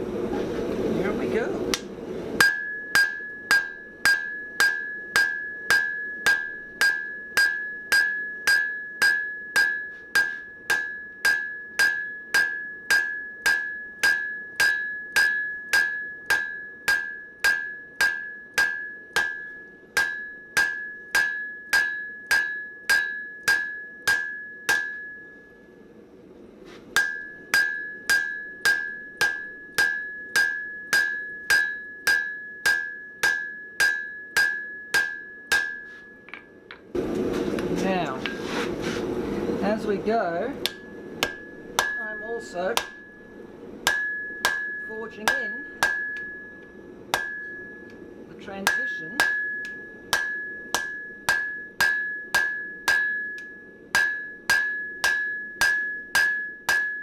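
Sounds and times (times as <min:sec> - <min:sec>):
hammer striking steel on anvil: 0:01.7 - 0:25.6, 0:26.9 - 0:57.0.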